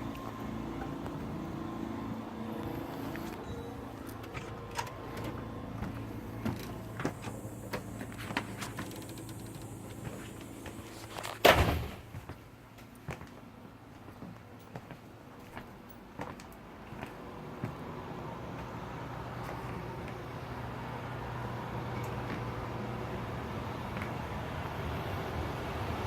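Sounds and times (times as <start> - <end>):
generator engine humming: 0.0 - 11.4, 16.6 - 26.0.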